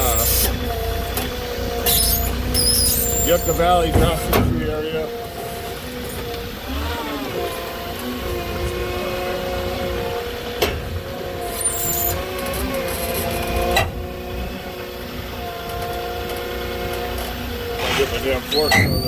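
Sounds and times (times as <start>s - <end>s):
diesel engine running: 0.0s - 19.0s
brief high squeal: 1.8s - 3.6s, 11.4s - 12.2s, 17.9s - 19.0s.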